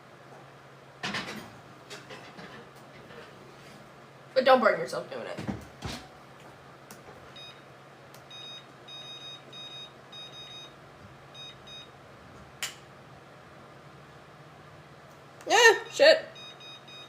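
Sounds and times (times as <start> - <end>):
oven control panel beeps: 7.3 - 7.6, 8.2 - 12.0, 15.9 - 17.0.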